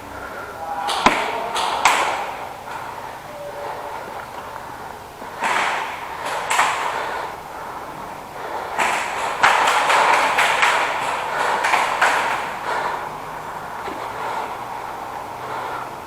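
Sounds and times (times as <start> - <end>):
airsoft gun shots: 0.9 - 2.4.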